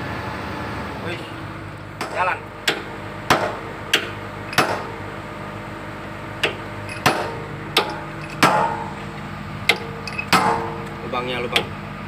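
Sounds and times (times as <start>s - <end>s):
steady low hum: 0.0s - 12.0s
hammer striking steel: 2.0s - 5.1s, 6.4s - 9.1s, 9.7s - 11.0s.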